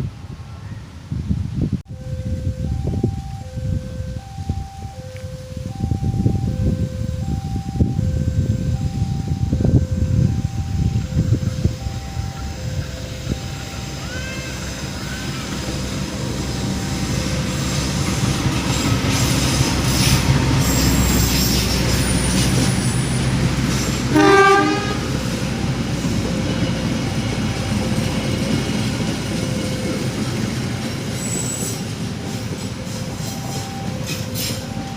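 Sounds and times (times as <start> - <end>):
locomotive engine and wheels: 0.0 - 34.9
train horn blast: 23.7 - 27.9.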